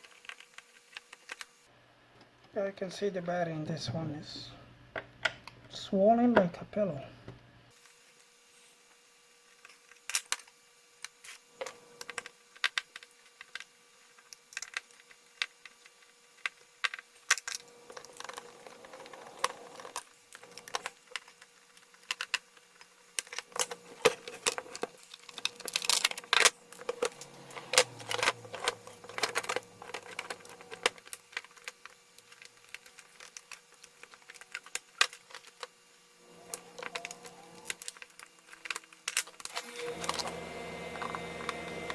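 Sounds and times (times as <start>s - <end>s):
small hard parts clicking and tapping: 0.0s - 1.5s, 9.6s - 41.9s.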